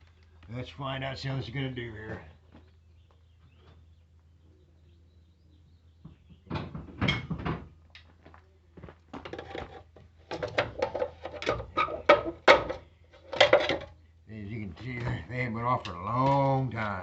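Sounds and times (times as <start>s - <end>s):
hard objects clattering: 9.2s - 14.0s.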